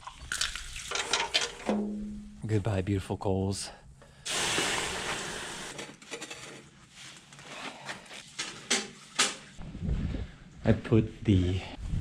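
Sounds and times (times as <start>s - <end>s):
coals rushing hiss: 4.2s - 5.8s.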